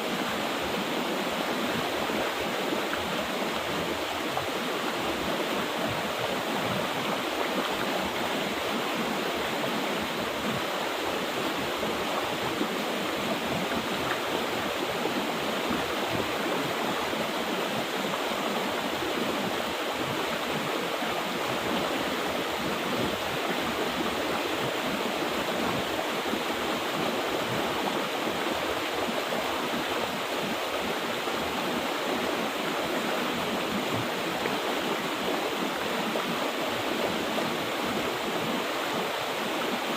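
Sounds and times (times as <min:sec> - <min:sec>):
river rushing over rocks: 0:00.0 - 0:39.9.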